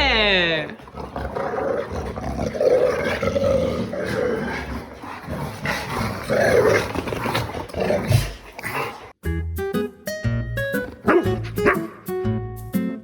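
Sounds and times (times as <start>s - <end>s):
dog grumbling and moaning: 0.2s - 9.2s.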